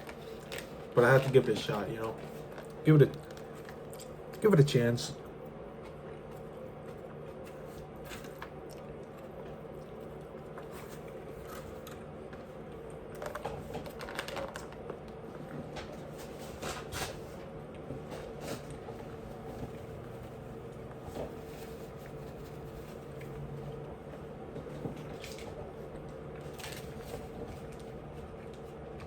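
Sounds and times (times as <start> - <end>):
steady background hum: 0.0 - 29.0
chewing smacks: 2.4 - 4.4, 5.4 - 13.4.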